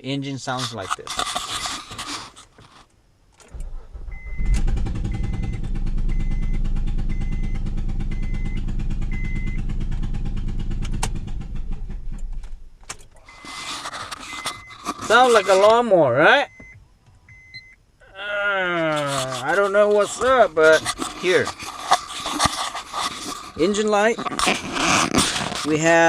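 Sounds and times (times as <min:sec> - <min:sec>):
engine running rough: 0:03.5 - 0:12.8.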